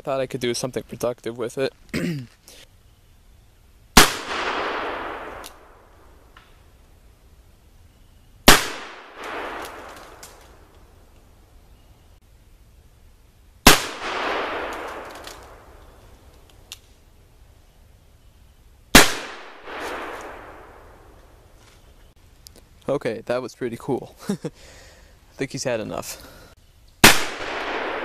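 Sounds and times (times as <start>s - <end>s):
gunshot echo: 4.0s - 5.9s, 8.5s - 10.2s, 13.7s - 15.8s, 18.9s - 21.0s, 27.0s - 28.0s
revolver gunshots: 4.0s - 5.9s, 8.4s - 10.2s, 13.6s - 15.8s, 18.9s - 21.0s, 27.0s - 28.0s.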